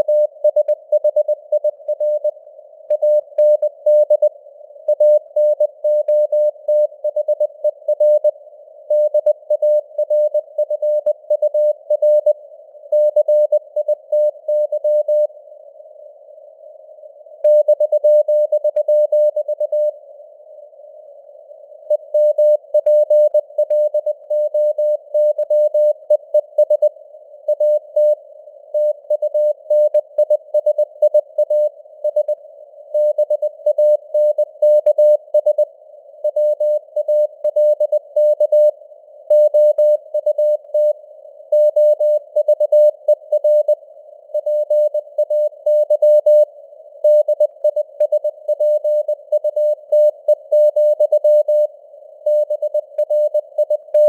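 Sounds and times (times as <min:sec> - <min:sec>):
morse code beeps: 0:47.1 - 0:51.7, 0:52.3 - 0:54.0.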